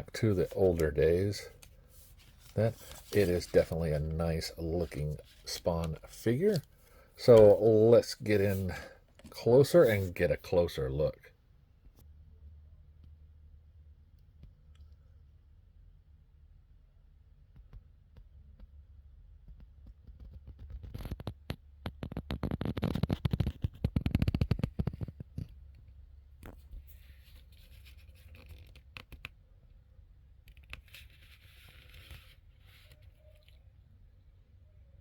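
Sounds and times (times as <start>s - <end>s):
scratchy rustling: 0.0s - 10.3s
scraping and crackling clicks: 20.5s - 25.6s.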